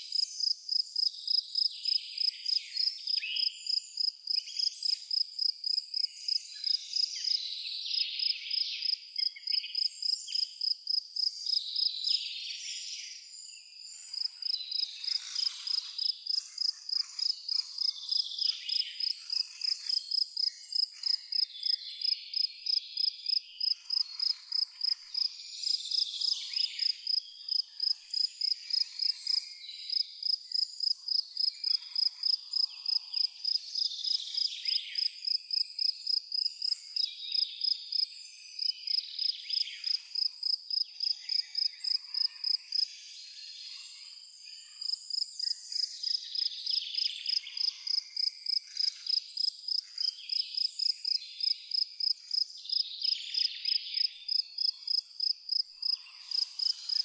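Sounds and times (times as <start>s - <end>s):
insect and animal calls: 0.0s - 57.0s.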